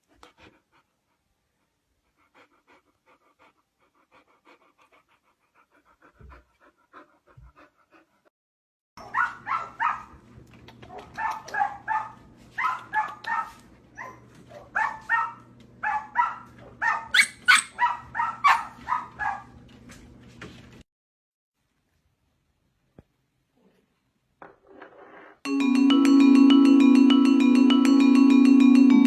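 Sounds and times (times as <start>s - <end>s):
dog yapping: 9.0s - 10.2s, 10.9s - 19.6s.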